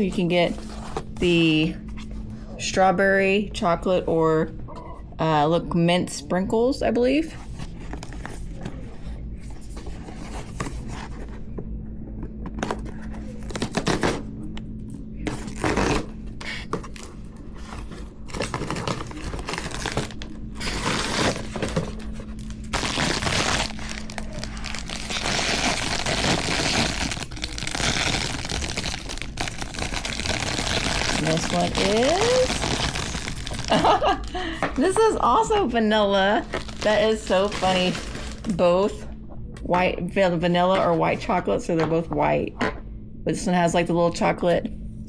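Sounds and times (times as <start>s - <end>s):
wrapping crinkling and tearing: 15.3s - 34.4s, 36.3s - 38.6s.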